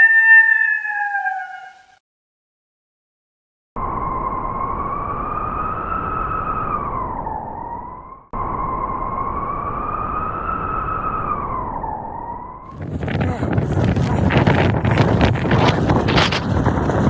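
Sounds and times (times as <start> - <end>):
wolf howling: 0.0 - 1.9.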